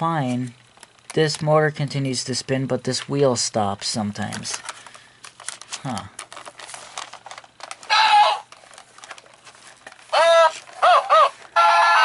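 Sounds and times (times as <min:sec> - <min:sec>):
toy clicking and rattling: 0:04.2 - 0:11.6
squawk-like tones: 0:07.9 - 0:08.5, 0:10.1 - 0:12.0.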